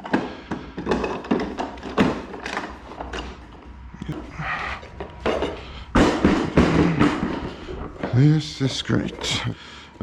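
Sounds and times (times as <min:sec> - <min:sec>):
workbench legs knocking and clunking: 0:05.1 - 0:08.1.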